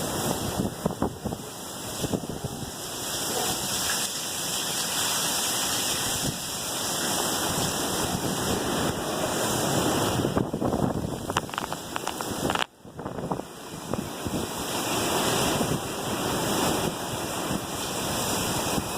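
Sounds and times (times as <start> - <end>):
wind buffeting microphone: 0.0 - 2.8, 7.2 - 18.9
heavy rain: 0.0 - 18.9
hurricane wind: 0.0 - 18.9.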